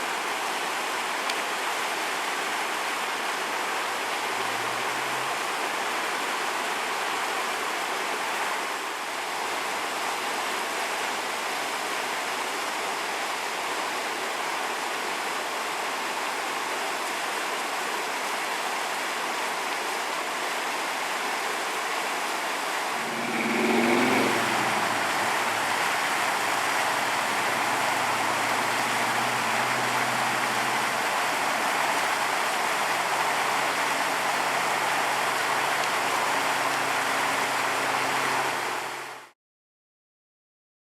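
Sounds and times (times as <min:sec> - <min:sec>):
floodwater rushing over road: 0:00.0 - 0:39.3
brief rising pitch sound: 0:22.9 - 0:29.9.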